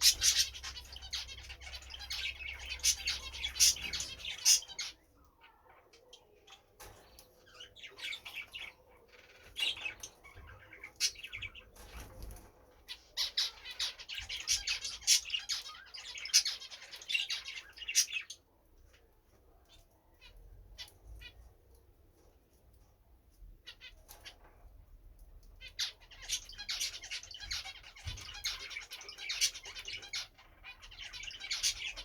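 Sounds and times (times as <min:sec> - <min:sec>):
goldfinch twittering song: 0:00.0 - 0:05.0, 0:25.6 - 0:32.0
faint bird chirps: 0:00.0 - 0:21.9.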